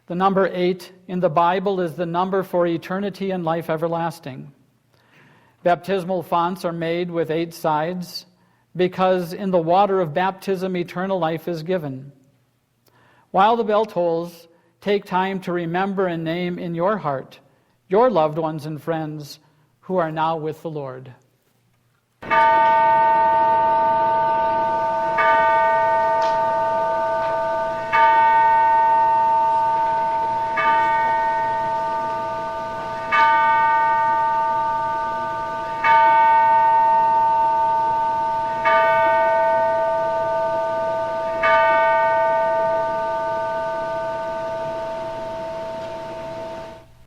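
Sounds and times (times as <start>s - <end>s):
church bell tolling: 22.2s - 47.0s.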